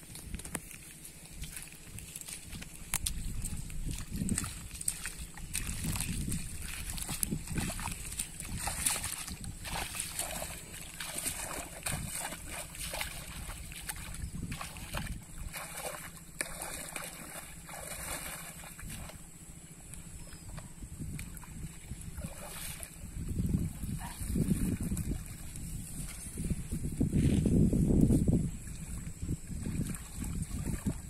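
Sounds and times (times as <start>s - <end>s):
shallow water splashing and sloshing: 0.1s - 26.7s, 28.5s - 31.0s.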